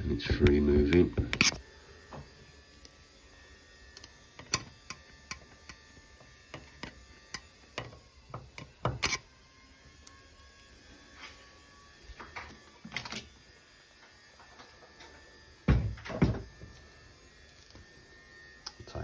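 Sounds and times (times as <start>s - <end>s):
tools clicking and knocking: 6.5s - 9.2s.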